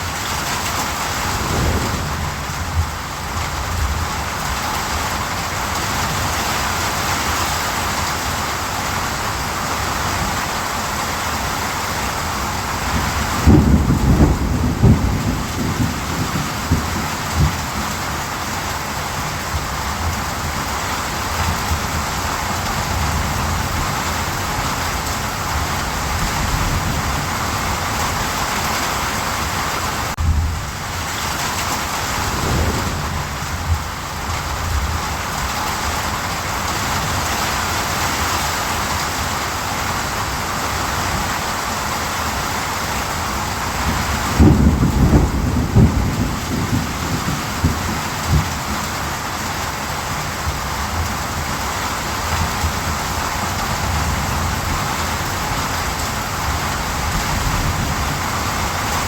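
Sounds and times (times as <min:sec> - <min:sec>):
steady rain: 0:00.0 - 0:59.0
low rumbles of thunder: 0:00.1 - 0:06.3, 0:12.6 - 0:18.5, 0:30.2 - 0:36.0, 0:43.7 - 0:48.9.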